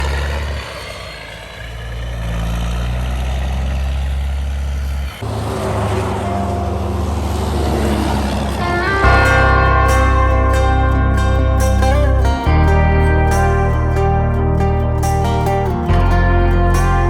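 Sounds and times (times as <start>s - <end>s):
machine engine: 0.0s - 13.4s
combine harvester engines running: 0.0s - 17.0s.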